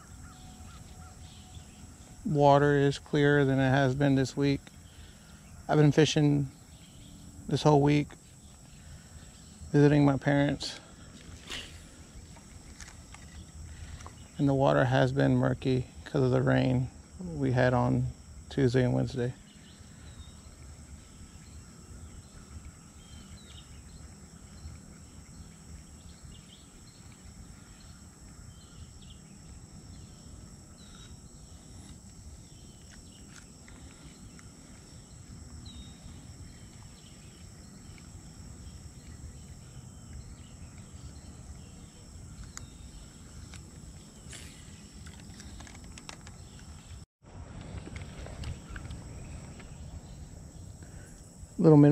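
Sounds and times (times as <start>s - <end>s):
insects droning: 0.0s - 51.9s
low rumble: 47.2s - 51.5s.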